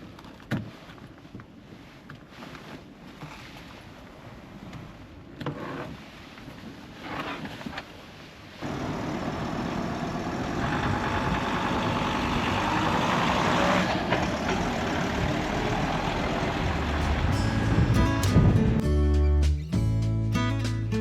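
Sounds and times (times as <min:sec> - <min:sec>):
van engine and road noise: 0:06.6 - 0:21.0.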